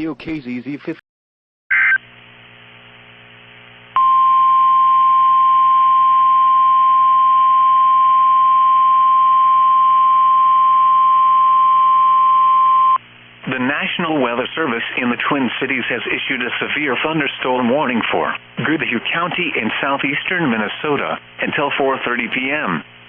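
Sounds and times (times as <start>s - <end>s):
steady alarm beep: 4.0s - 13.0s.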